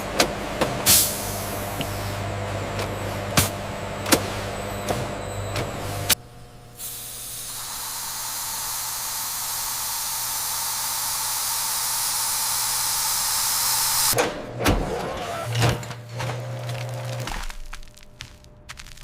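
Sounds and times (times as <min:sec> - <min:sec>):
low machine hum: 0:00.0 - 0:13.5
steady hissing jet: 0:06.8 - 0:14.2.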